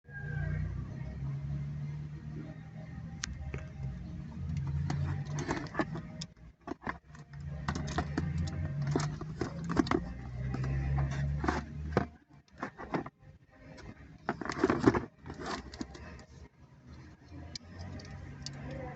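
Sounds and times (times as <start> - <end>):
packaging clicks and rustles: 6.6 - 13.1, 14.2 - 16.3.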